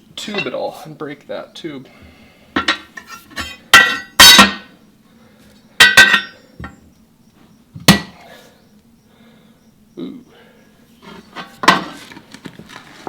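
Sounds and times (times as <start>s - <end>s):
tire irons clanking on metal rim: 0.2s - 0.8s, 2.6s - 4.7s, 5.8s - 6.8s.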